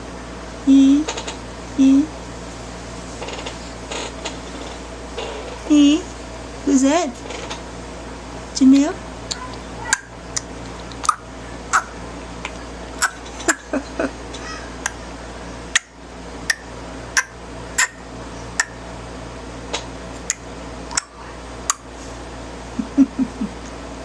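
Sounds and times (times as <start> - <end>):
child clicking tongue: 9.3 - 11.2.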